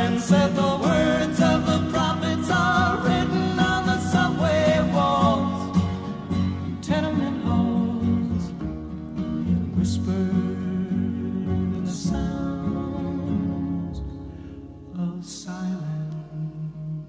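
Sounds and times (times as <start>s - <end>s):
people singing folk song: 0.0s - 8.8s, 9.4s - 14.4s
strummed acoustic guitar: 0.0s - 17.0s.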